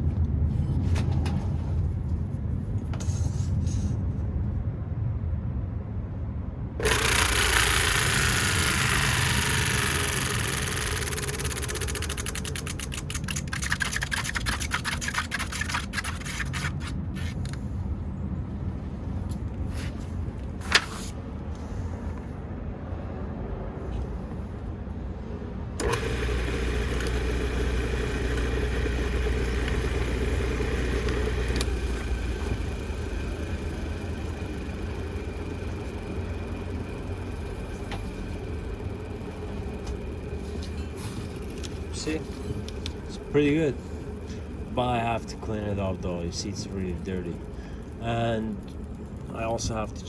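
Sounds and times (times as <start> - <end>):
electric motor ticking down: 6.8 - 15.6, 25.8 - 50.0
electric motor humming: 6.8 - 15.8, 25.8 - 49.9.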